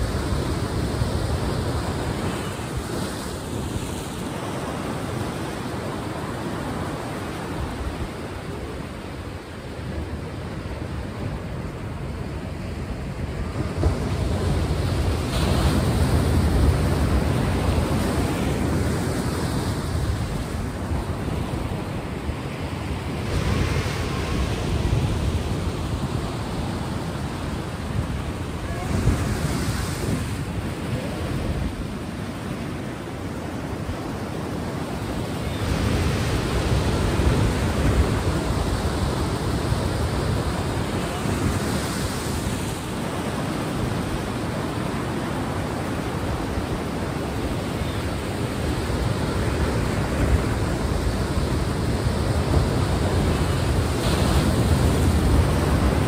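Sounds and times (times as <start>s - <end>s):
ocean waves and surf: 0.0s - 56.0s.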